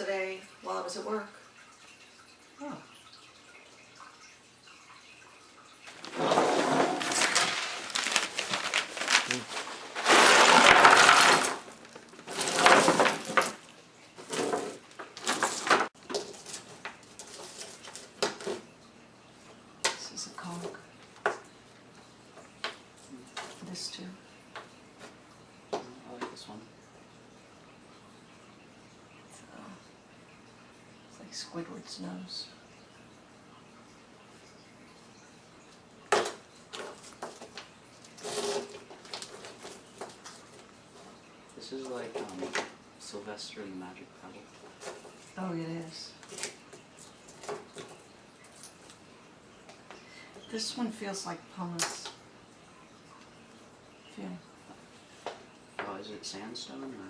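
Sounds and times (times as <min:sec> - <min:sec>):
rocks and shells clattering: 0:05.9 - 0:17.8.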